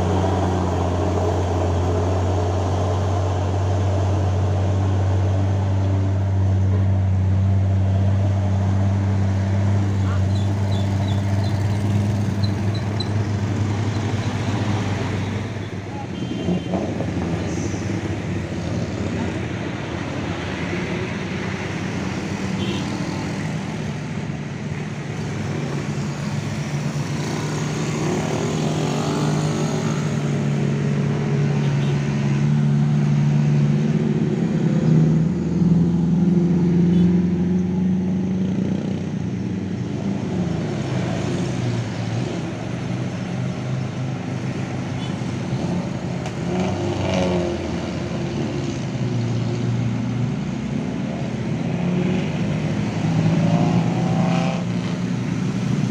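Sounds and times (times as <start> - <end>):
truck diesel engine labouring uphill: 0.0 - 22.5.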